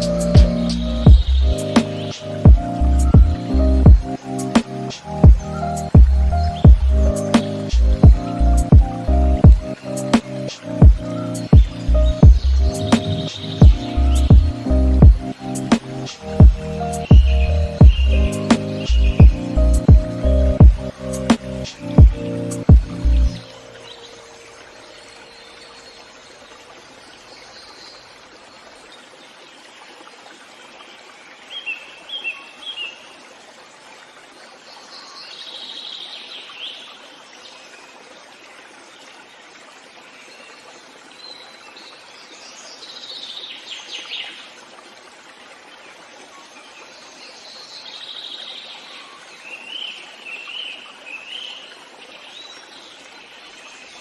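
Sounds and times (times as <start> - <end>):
birds chirping and trilling: 0.0 - 26.4
steady background hiss: 0.0 - 54.0.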